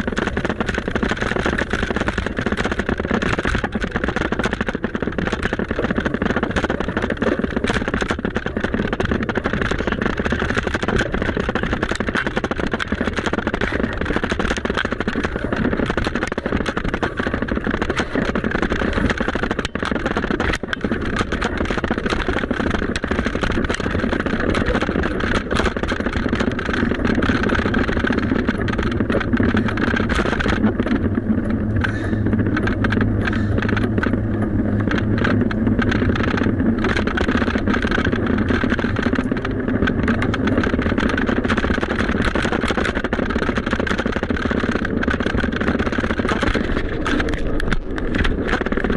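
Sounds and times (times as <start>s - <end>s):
bicycle tyres rolling on path: 0.0s - 48.9s
low hum: 0.0s - 48.9s
wind on microphone: 0.0s - 48.9s.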